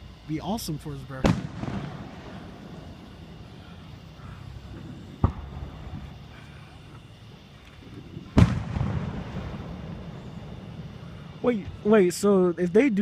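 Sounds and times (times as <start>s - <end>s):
firework shells bursting: 1.2s - 6.3s, 6.9s - 11.9s.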